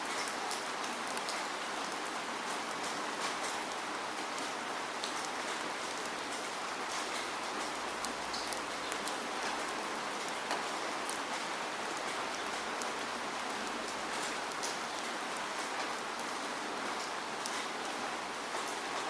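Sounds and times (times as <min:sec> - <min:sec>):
steady rain: 0:00.0 - 0:19.0
raindrops ticking: 0:00.1 - 0:18.8.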